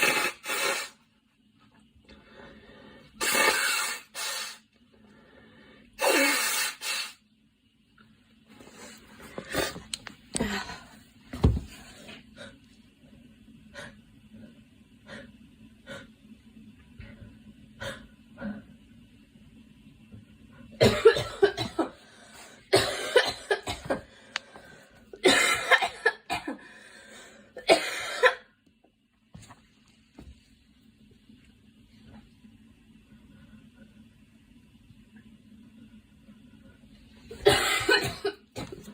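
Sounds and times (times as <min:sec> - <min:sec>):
girl coughing: 0:20.8 - 0:22.0, 0:22.7 - 0:24.1, 0:25.2 - 0:26.6, 0:27.6 - 0:28.5, 0:37.4 - 0:38.5.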